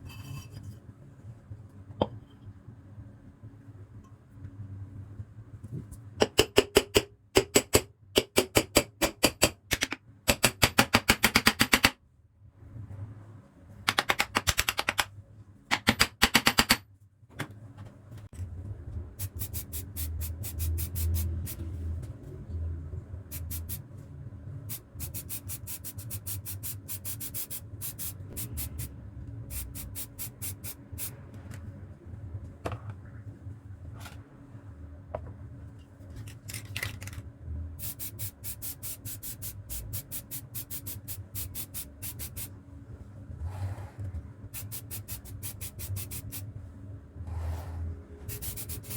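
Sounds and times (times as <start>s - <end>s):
steady low hum: 0.0s - 11.0s, 12.0s - 48.9s
rapid mechanical clicking: 13.9s - 15.1s, 15.7s - 16.8s.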